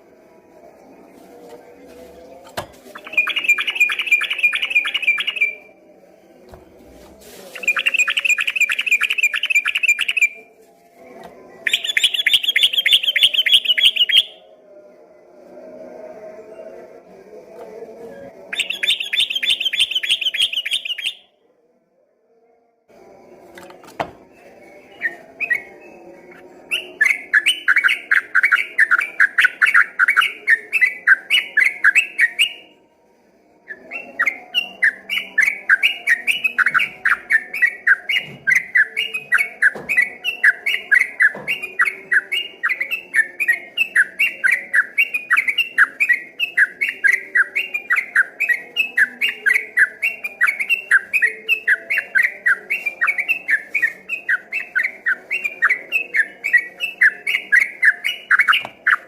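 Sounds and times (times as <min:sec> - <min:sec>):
bird singing repeated notes: 0:00.0 - 0:06.8, 0:07.5 - 0:10.4, 0:11.6 - 0:14.5, 0:18.1 - 0:21.3, 0:23.6 - 0:32.8, 0:33.6 - 0:59.0
high dense bird trill: 0:01.7 - 0:05.7, 0:07.6 - 0:10.4, 0:11.7 - 0:14.4, 0:18.6 - 0:21.3.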